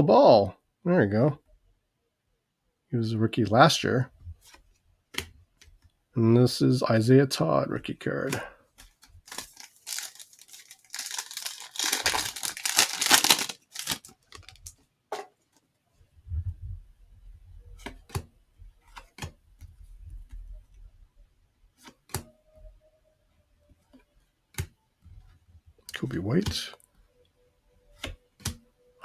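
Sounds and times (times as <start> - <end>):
cards clicking and tapping: 8.3 - 15.3, 17.8 - 18.3, 21.8 - 22.3
wrapper torn open: 9.3 - 14.8.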